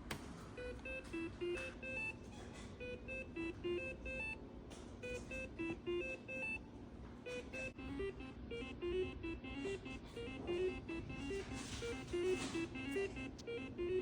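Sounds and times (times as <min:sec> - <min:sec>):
electronic beep melody: 0:02.8 - 0:04.4, 0:05.0 - 0:06.6, 0:07.3 - 0:14.0.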